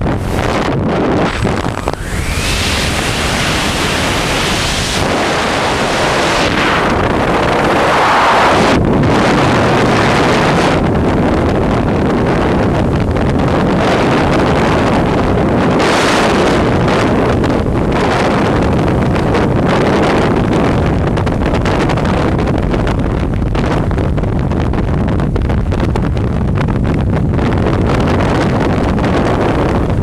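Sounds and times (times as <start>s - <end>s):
wind buffeting microphone: 0.0s - 30.0s.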